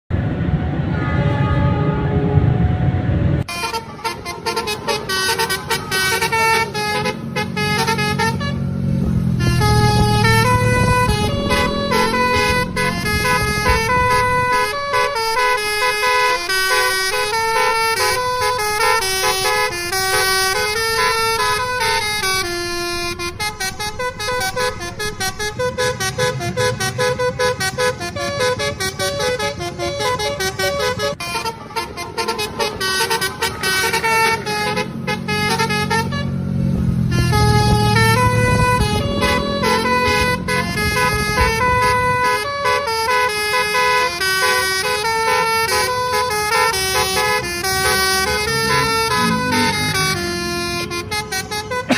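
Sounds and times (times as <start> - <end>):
multi-tone air horn melody: 3.5 - 8.7, 9.3 - 36.4, 37.0 - 51.9
low rumble: 9.0 - 14.5.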